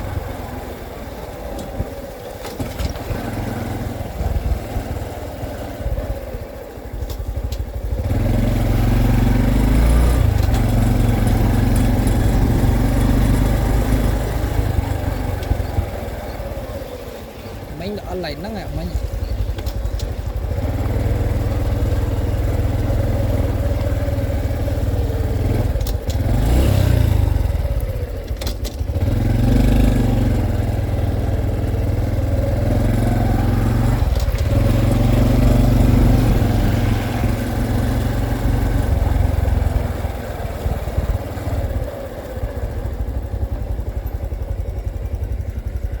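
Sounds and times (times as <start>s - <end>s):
motorcycle engine running: 0.0s - 46.0s.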